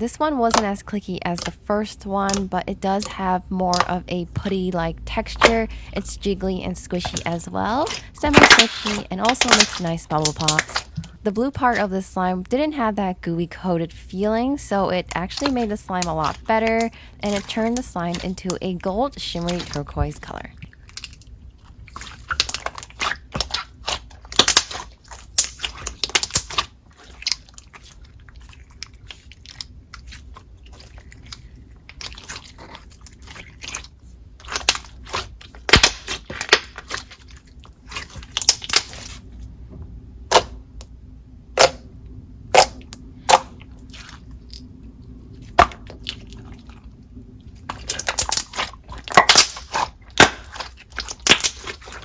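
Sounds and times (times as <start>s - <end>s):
slime squishing with wet clicks: 0.4s - 4.8s, 7.0s - 11.8s, 15.0s - 39.2s, 47.6s - 52.0s.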